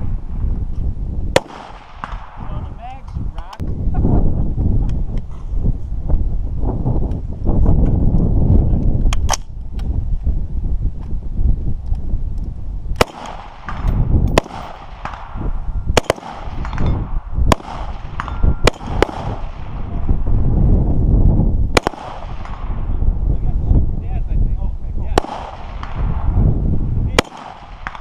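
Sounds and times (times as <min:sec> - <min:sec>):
steady low rumble: 0:00.0 - 0:28.0
rifle shots with echo: 0:01.3 - 0:02.6, 0:13.0 - 0:20.1, 0:21.7 - 0:22.9, 0:25.1 - 0:26.3, 0:27.2 - 0:28.0.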